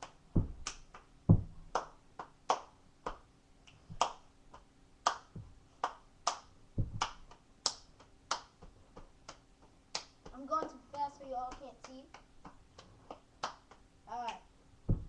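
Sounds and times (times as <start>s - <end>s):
hand claps and body slaps: 0.0s - 15.0s
heavy foot stomp: 0.3s - 0.7s, 1.3s - 1.8s, 6.8s - 7.2s.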